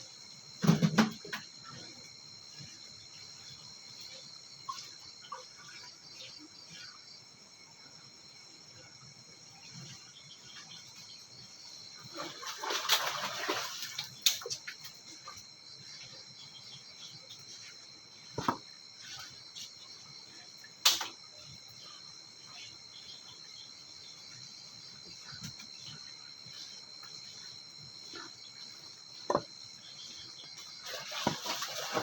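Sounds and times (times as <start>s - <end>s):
insect chirring: 0.0s - 32.0s
water splashing: 12.1s - 14.6s, 30.8s - 32.0s.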